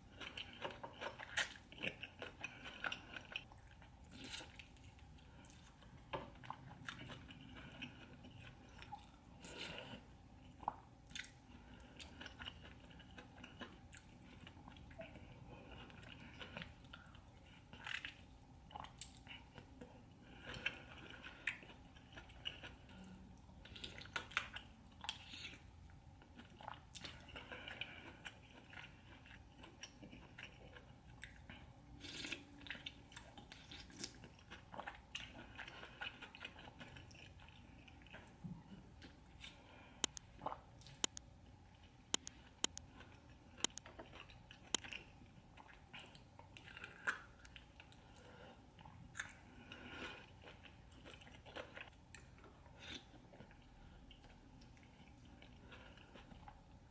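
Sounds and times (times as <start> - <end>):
person chewing food: 0.0 - 56.9
wet smacking: 42.2 - 42.8.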